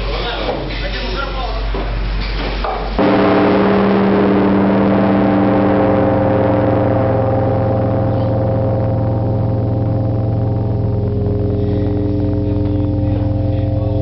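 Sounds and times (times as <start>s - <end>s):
large bell ringing: 3.0s - 14.0s.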